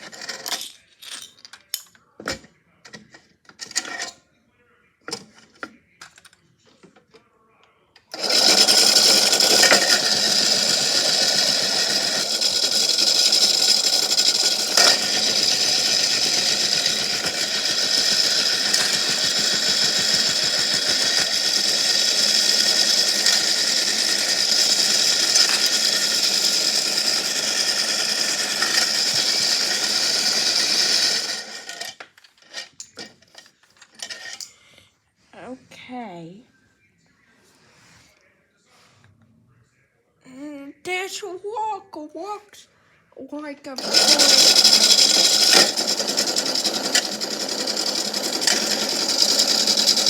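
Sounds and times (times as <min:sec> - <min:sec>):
small electric motor whining: 0:08.2 - 0:32.0, 0:43.8 - 0:50.0
rocks and shells rattling: 0:43.8 - 0:50.0.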